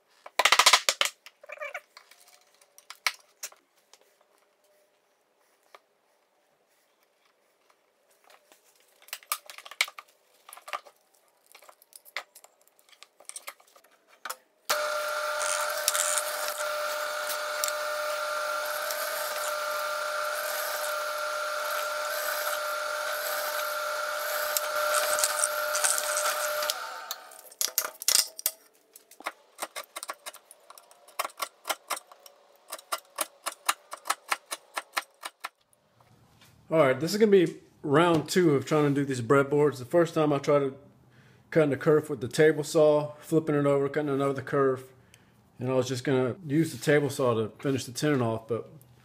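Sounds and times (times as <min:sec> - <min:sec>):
power tool whining: 0:14.7 - 0:27.4.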